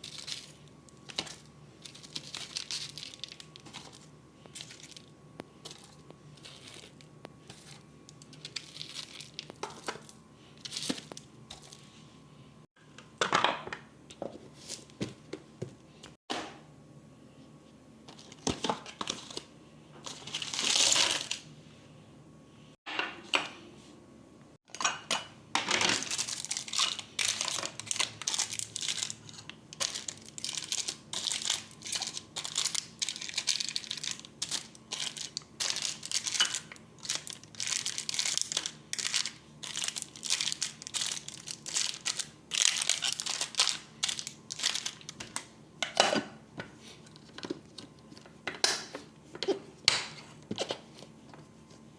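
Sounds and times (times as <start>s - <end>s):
plastic packaging crinkling: 0.0s - 11.9s, 18.2s - 21.4s, 25.9s - 45.5s.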